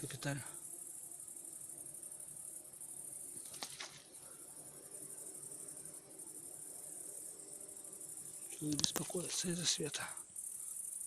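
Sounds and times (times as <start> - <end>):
crickets chirping: 0.0 - 11.0
honeybees humming: 0.0 - 11.0
faint clicks: 8.5 - 9.4.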